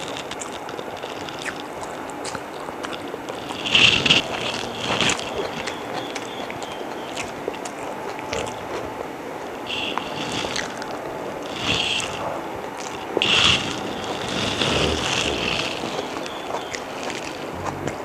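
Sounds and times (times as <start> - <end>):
mouth smacking: 0.0 - 18.0
person chewing and biting: 0.0 - 18.0.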